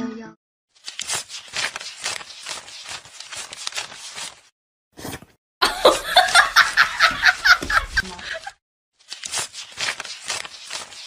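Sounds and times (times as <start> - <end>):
people laughing: 5.6 - 8.6.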